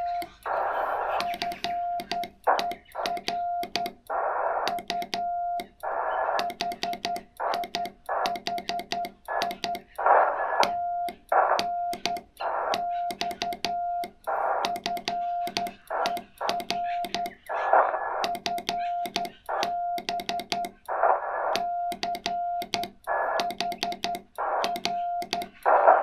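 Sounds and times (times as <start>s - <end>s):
radio band noise hiss: 0.0s - 4.9s, 5.7s - 6.6s, 9.2s - 13.1s, 14.2s - 19.7s, 20.8s - 21.7s, 23.1s - 23.5s, 24.4s - 26.0s
morse code tone: 0.0s - 26.0s.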